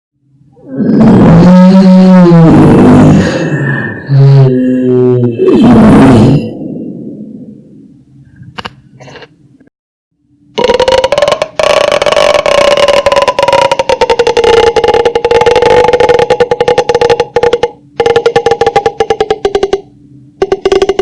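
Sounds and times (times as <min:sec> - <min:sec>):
rattling pulsed creature call: 0:10.6 - 0:21.0.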